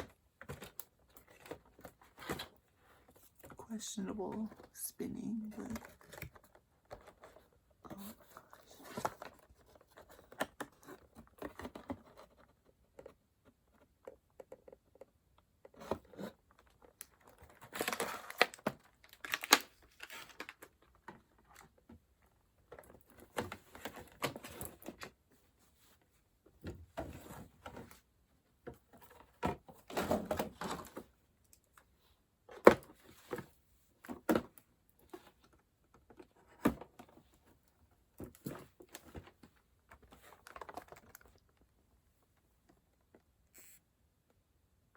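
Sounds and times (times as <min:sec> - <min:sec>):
packaging tearing and crinkling: 0:17.6 - 0:20.6.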